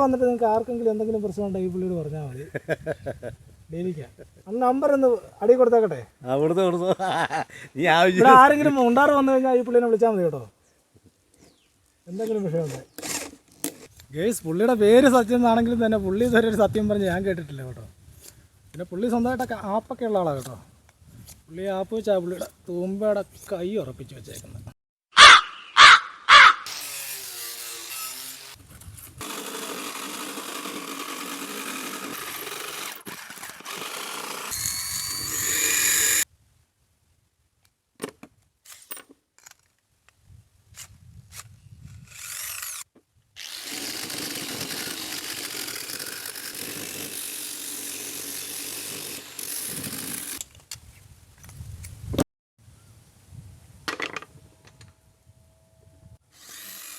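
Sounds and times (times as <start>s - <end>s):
crow cawing: 25.2s - 26.6s
power tool cutting wood: 26.6s - 28.6s, 29.2s - 36.3s, 42.1s - 50.4s, 56.3s - 56.9s.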